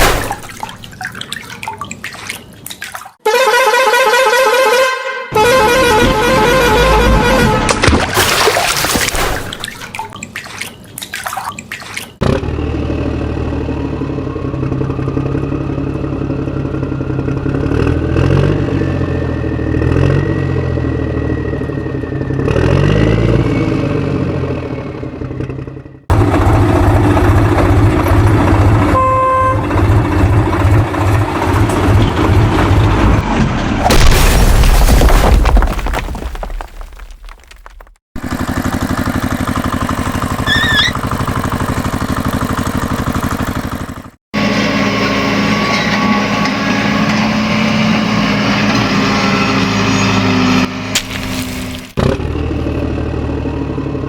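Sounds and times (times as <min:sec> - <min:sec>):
vehicle horn beep: 0:03.2 - 0:07.8, 0:28.9 - 0:29.8
engine humming and revving: 0:05.3 - 0:07.8, 0:12.2 - 0:33.9, 0:38.2 - 0:54.0.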